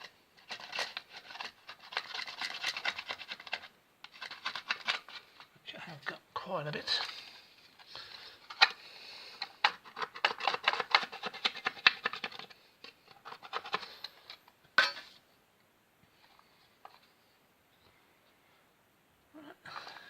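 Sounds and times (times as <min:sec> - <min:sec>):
filler knife scraping paint: 0:00.0 - 0:05.4.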